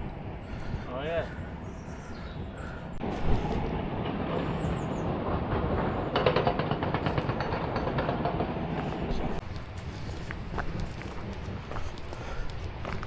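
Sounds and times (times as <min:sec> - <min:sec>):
machinery rumble: 0:00.0 - 0:13.0
rapid rattling clatter: 0:05.3 - 0:11.2.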